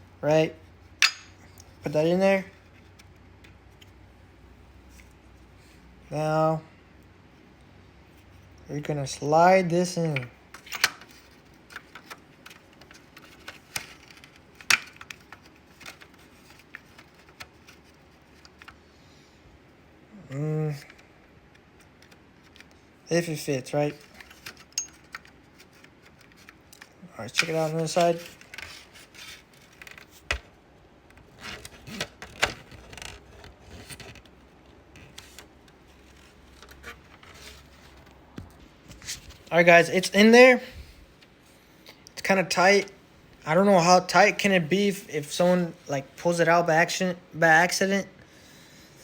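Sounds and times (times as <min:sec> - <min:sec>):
plastic rubbing and scraping: 0:24.0 - 0:30.5, 0:31.1 - 0:39.5.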